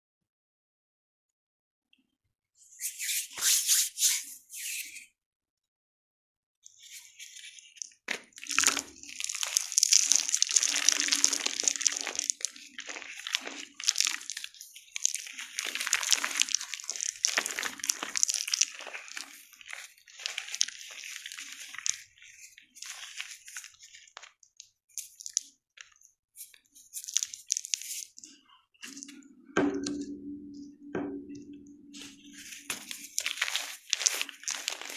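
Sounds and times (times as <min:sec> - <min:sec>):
chalk being crushed by hand: 0:08.4 - 0:24.4, 0:32.3 - 0:34.9.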